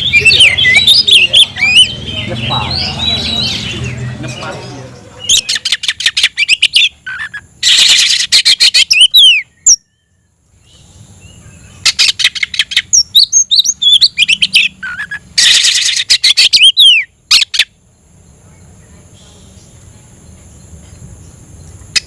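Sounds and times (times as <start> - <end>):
bird singing rattling and whistling: 0.0 - 9.9, 11.6 - 17.8.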